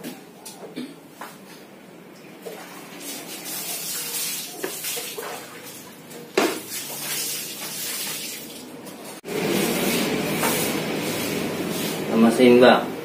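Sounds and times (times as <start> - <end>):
hands rubbing hair: 9.9 - 12.1.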